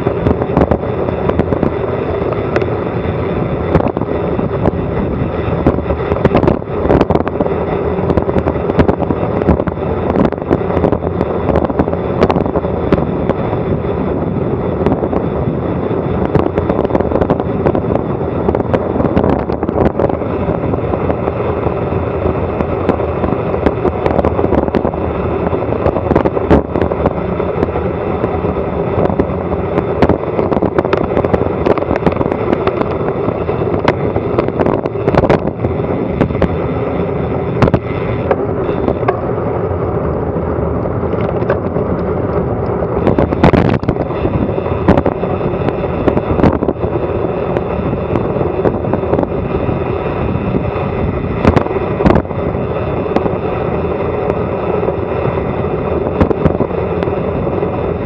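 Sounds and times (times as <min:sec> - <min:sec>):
wind noise on microphone: 0:00.0 - 0:58.0
microphone crackling: 0:22.5 - 0:39.4, 0:40.2 - 0:53.4.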